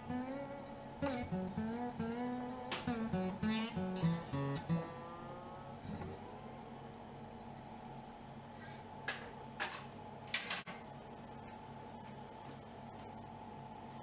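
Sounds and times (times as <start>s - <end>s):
acoustic guitar melody: 0.0s - 7.1s.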